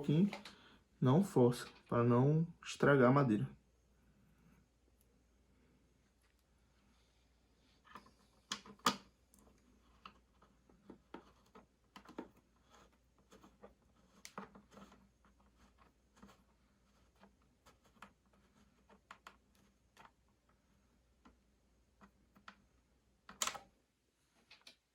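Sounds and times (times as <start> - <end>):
small clicks and knocks of tools: 24.4 - 24.9.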